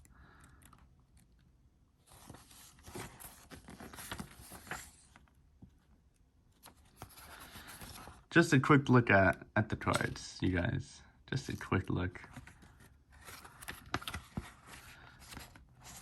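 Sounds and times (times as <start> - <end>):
paper rustling and crinkling: 2.0 - 5.8, 6.6 - 8.3, 11.5 - 16.0.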